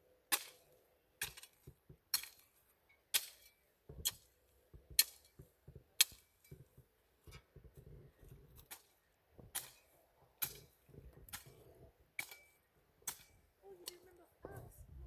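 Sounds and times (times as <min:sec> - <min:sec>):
metal garden tool chopping dirt: 0:00.3 - 0:00.6, 0:01.2 - 0:02.5, 0:03.1 - 0:04.3, 0:05.0 - 0:05.4, 0:09.5 - 0:11.6, 0:12.2 - 0:14.0.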